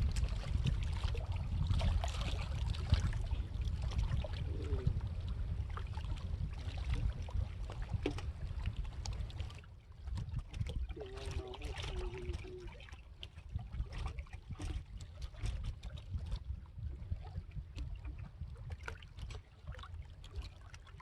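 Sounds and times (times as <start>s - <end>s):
steady low rumble: 0.0s - 12.8s
water lapping and trickling: 0.0s - 21.0s.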